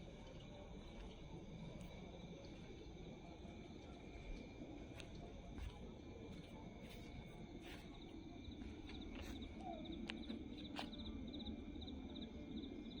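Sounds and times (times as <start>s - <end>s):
crickets chirping: 0.0s - 13.0s
high insect drone: 0.0s - 13.0s.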